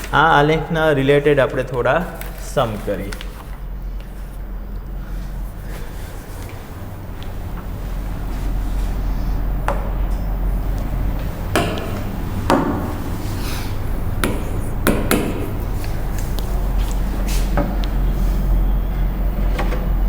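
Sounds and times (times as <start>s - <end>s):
sharp knocks and taps: 11.5s - 12.8s, 14.2s - 15.6s.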